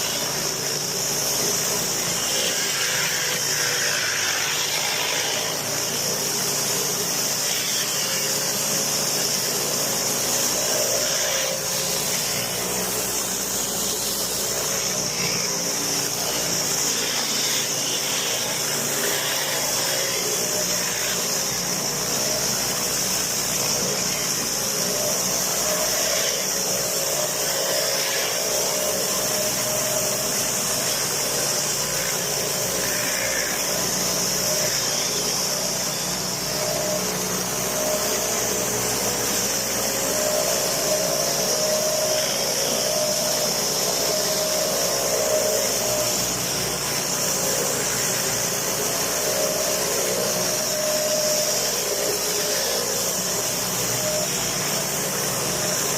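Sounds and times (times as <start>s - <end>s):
motor and pump humming: 0.0s - 55.9s
pressure washer spray hissing: 11.2s - 55.9s.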